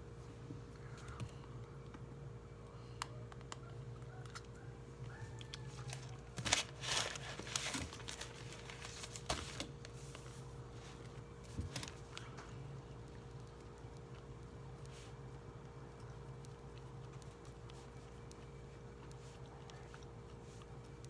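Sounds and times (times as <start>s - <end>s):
steady low hum: 0.0s - 21.0s
paper rustling: 5.7s - 12.3s.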